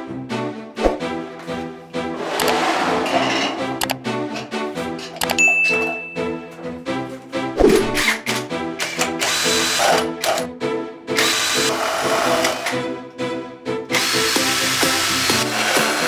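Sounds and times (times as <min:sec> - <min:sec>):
background music: 0:00.0 - 0:16.0
power drill running: 0:08.0 - 0:10.4, 0:11.2 - 0:12.9, 0:13.9 - 0:16.0.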